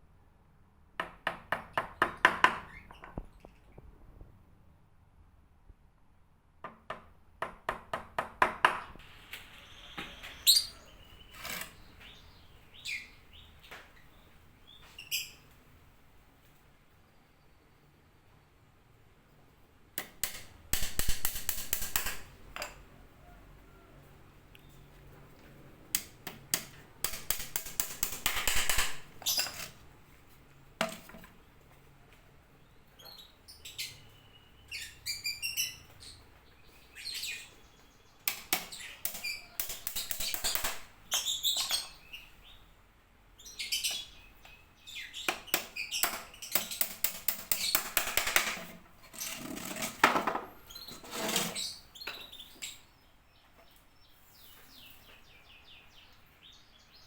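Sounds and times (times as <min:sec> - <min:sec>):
bird chirping: 0:08.7 - 0:15.5, 0:27.0 - 0:29.8, 0:32.6 - 0:42.8, 0:43.4 - 0:48.6, 0:50.5 - 0:57.0
bird cage parts clicking and rattling: 0:20.0 - 0:22.8, 0:26.0 - 0:29.8.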